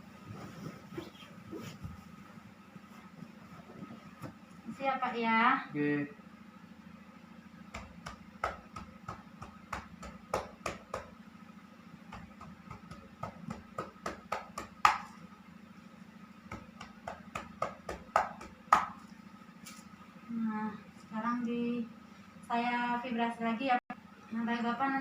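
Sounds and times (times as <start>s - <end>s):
steady low hum: 0.0s - 25.0s
cupped hands clapping on back: 7.8s - 11.1s, 12.2s - 15.2s, 16.5s - 19.0s.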